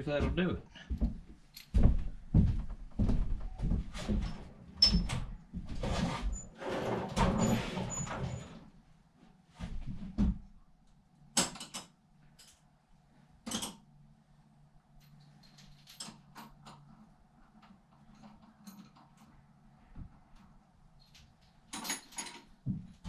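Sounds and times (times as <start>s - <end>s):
bolts and tools rattling: 21.7s - 22.6s.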